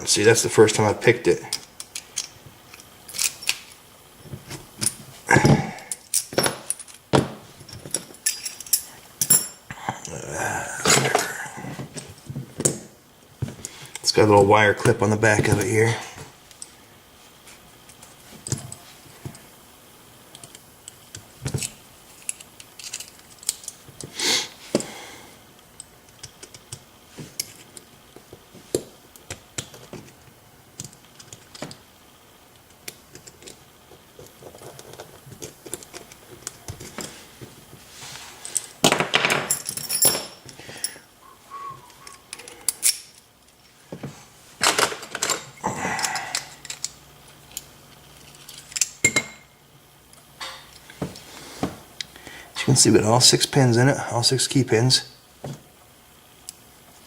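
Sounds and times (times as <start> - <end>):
small metal parts clicking and clinking: 1.5 - 3.8, 5.9 - 10.2, 21.5 - 23.8, 38.4 - 41.0, 42.0 - 43.8, 44.6 - 49.4.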